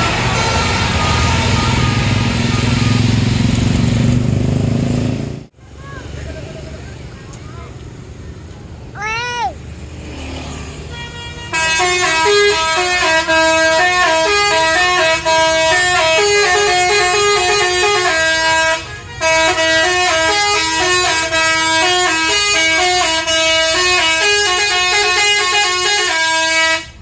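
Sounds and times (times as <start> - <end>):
musical bus horn tune: 0.0 - 3.2, 10.9 - 27.0.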